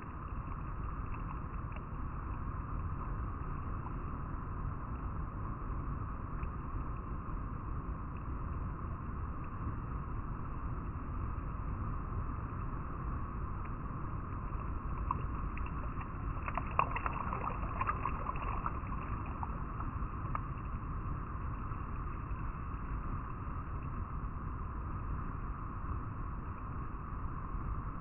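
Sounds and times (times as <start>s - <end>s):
river water flowing over rocks: 14.8s - 20.4s.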